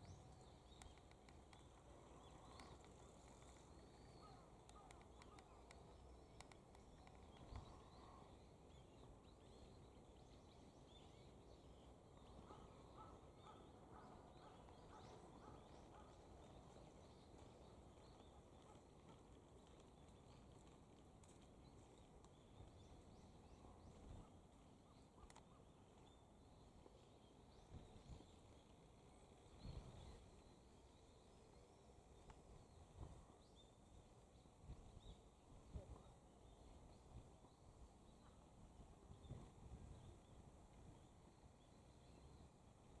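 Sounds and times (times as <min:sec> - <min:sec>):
faint high bird chirps: 0:00.0 - 0:11.4
low outdoor hum: 0:00.0 - 0:43.0.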